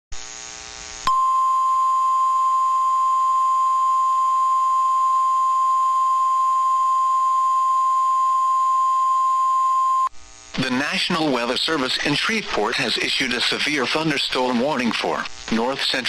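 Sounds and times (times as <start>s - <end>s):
steady alarm tone: 1.1s - 10.1s.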